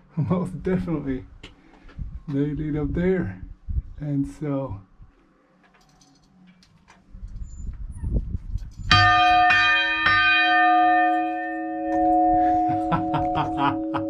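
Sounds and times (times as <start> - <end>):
church bell ringing: 8.9 - 14.0.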